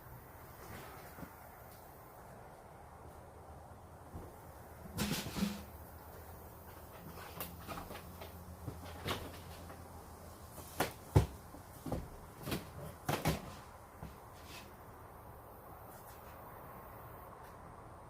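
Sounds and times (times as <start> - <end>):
items knocking when set down: 4.9 - 5.7.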